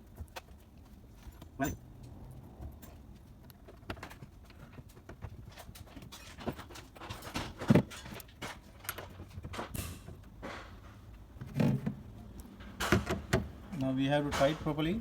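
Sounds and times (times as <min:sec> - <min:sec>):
clicks and knocks on refrigerator door: 0:12.8 - 0:13.5.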